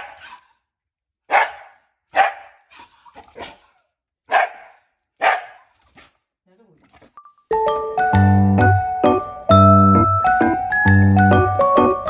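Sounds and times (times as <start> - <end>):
dog barking: 0.0 - 0.4, 1.3 - 3.6, 4.3 - 6.2.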